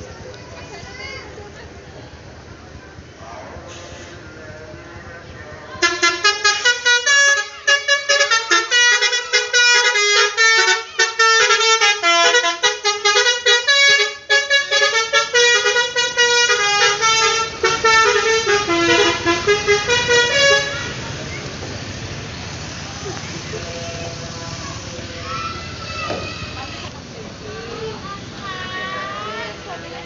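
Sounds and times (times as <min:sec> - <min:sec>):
musical bus air horn melody: 0:05.8 - 0:21.0.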